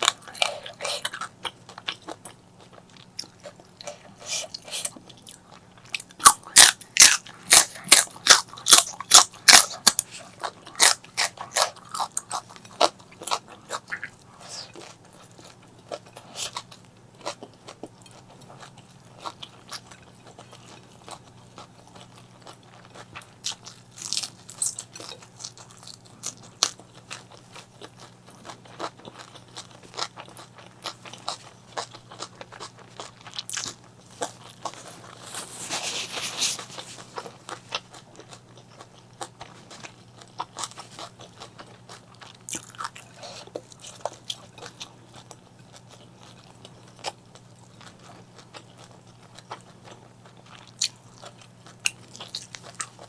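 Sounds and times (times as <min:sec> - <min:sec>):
chewing and crunching food: 0:00.0 - 0:53.0.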